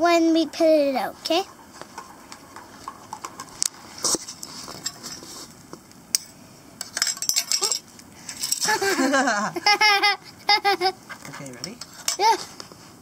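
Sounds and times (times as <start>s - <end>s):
cup and stove gear clinking: 6.8s - 8.7s.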